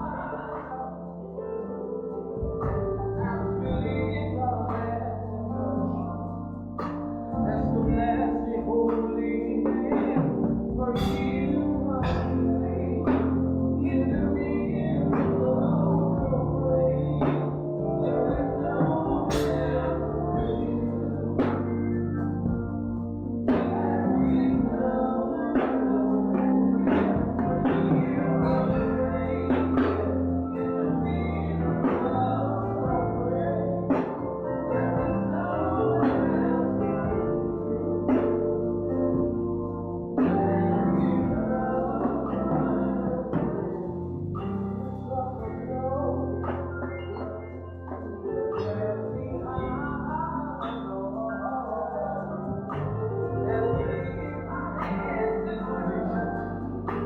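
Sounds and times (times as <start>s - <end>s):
bass line: 0.0s - 57.0s
keyboard chords: 0.0s - 57.0s
percussion hits: 10.0s - 12.4s, 19.3s - 19.7s.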